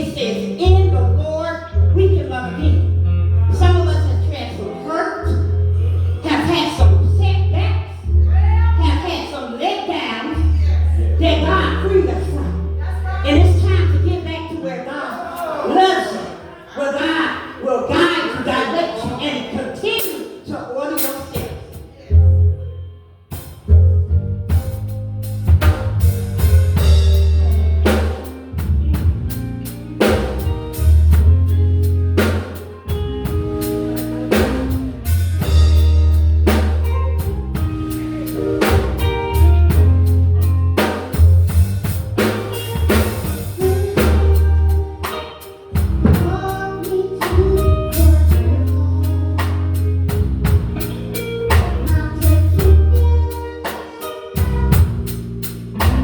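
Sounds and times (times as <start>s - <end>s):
deep bass line: 0.0s - 9.4s, 10.3s - 14.5s, 23.4s - 53.6s, 54.3s - 56.0s
gospel band playing: 0.0s - 56.0s
drum kit beat: 21.0s - 21.9s, 23.3s - 56.0s.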